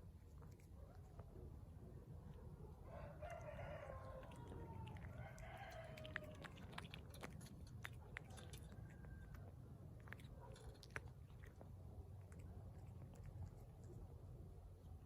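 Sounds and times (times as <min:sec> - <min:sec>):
cat chewing with clicks: 0:00.0 - 0:15.0
cat calling while eating: 0:02.8 - 0:13.8.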